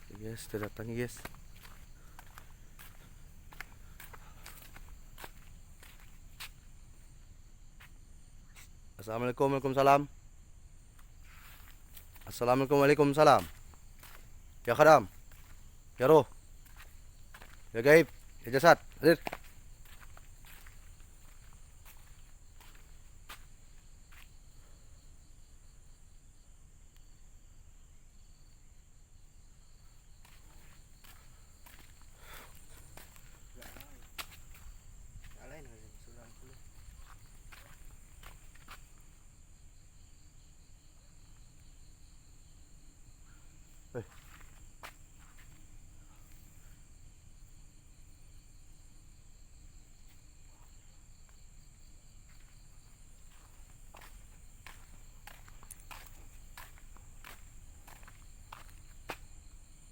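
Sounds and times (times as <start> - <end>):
soft footsteps: 0.0 - 6.8, 10.9 - 24.4, 30.2 - 38.9, 52.3 - 59.3
crickets trilling: 0.0 - 59.9
faint pulsing insect chirp: 0.0 - 59.9.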